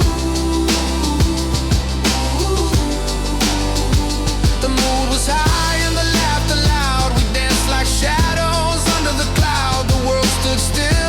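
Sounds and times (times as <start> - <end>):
pop song instrumental: 0.0 - 11.0.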